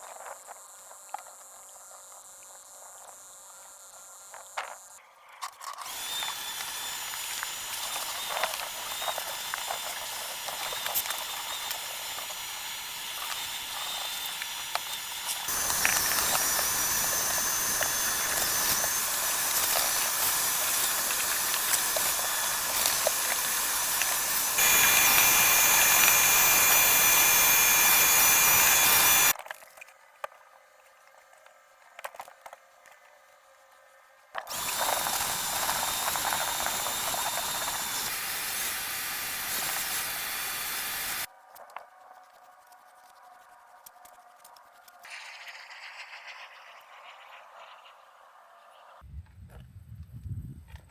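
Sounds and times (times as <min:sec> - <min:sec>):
power tool whining: 0:05.7 - 0:29.4, 0:34.4 - 0:41.3.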